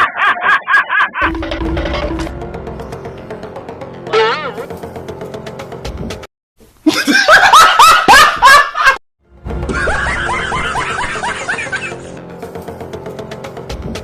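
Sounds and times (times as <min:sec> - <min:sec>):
laughter sound effect: 0:00.0 - 0:01.4, 0:06.8 - 0:09.0, 0:09.7 - 0:12.1
background music: 0:01.2 - 0:06.3, 0:09.2 - 0:14.0.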